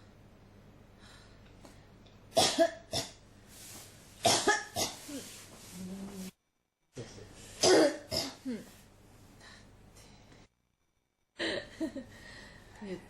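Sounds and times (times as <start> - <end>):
person coughing: 2.4 - 3.2, 4.2 - 5.2, 7.6 - 8.6.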